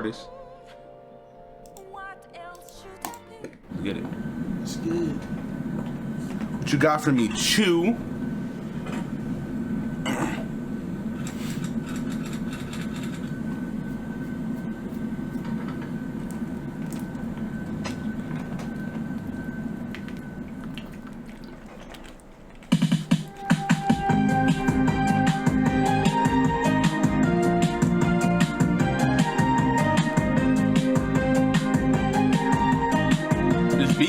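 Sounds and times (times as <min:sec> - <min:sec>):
plucked and keyboard music: 0:00.0 - 0:03.7, 0:22.8 - 0:34.0
thin high held tone: 0:23.2 - 0:26.6.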